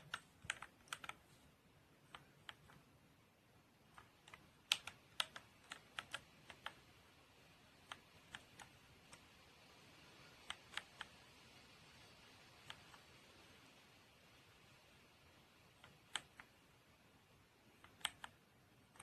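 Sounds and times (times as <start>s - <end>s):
mechanical keyboard key clicks: 0.0s - 1.2s, 3.9s - 6.8s, 10.4s - 11.1s, 15.8s - 16.5s, 17.8s - 19.0s.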